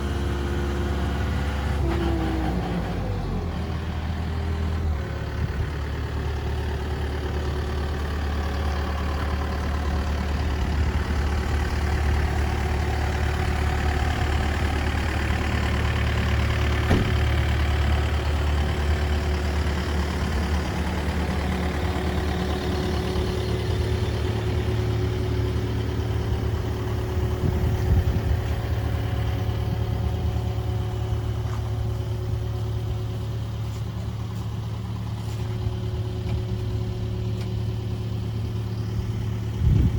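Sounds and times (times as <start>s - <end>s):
excavator diesel engine humming: 0.0s - 39.9s
single knock: 16.9s - 17.2s.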